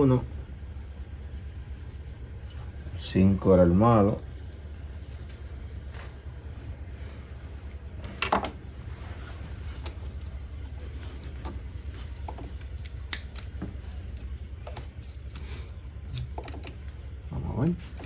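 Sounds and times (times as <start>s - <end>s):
steady low hum: 0.0s - 18.0s
clicks and knocks of handled parts: 12.2s - 16.9s.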